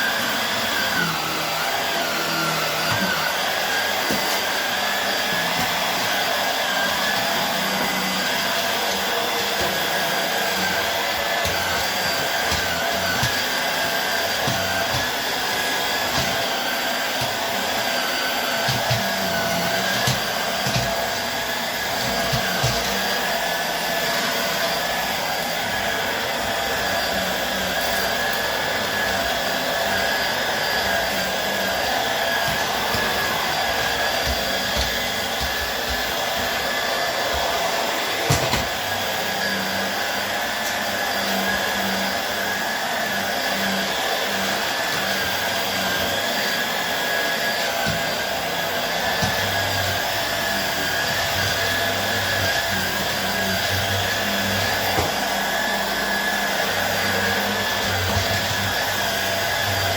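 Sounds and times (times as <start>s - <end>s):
vacuum cleaner running: 0.0s - 59.9s.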